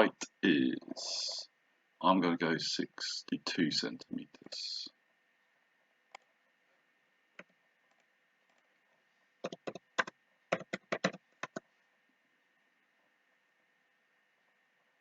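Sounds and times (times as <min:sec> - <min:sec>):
keyboard keystrokes: 0:09.4 - 0:11.6.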